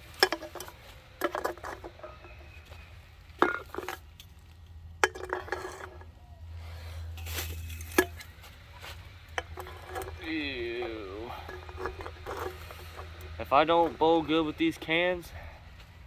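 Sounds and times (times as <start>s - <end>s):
cans clinking together: 0.2s - 2.4s, 3.4s - 4.0s, 5.0s - 6.1s, 9.4s - 14.0s.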